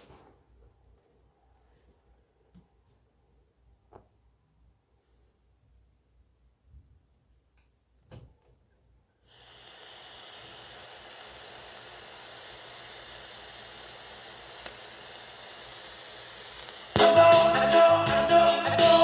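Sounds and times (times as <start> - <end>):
speaker hiss: 0.0 - 0.4, 9.2 - 19.0.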